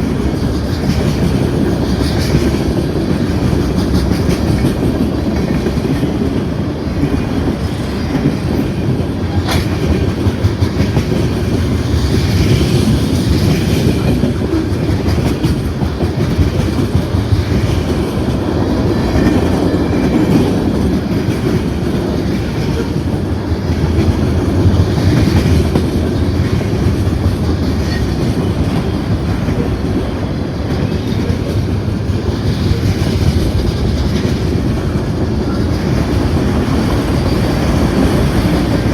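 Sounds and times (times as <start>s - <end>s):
train wheels rumbling on rails: 0.0s - 38.9s.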